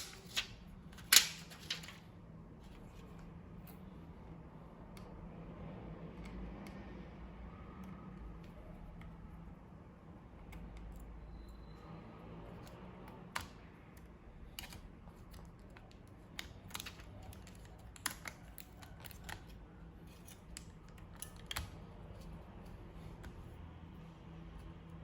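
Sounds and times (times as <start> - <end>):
small tools clicking and tapping: 14.5 - 21.8.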